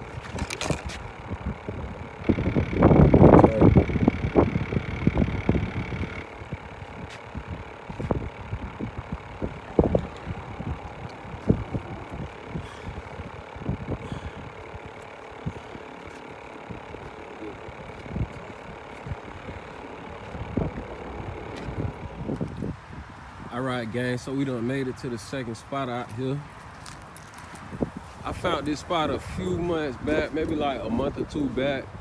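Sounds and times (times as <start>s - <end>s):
car hum from inside: 0.0s - 23.4s.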